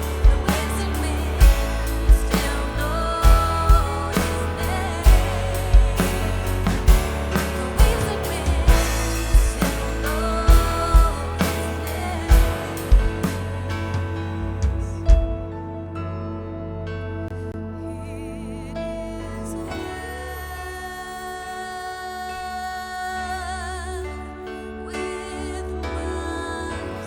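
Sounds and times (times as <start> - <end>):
live worship band playing: 0.0 - 18.2.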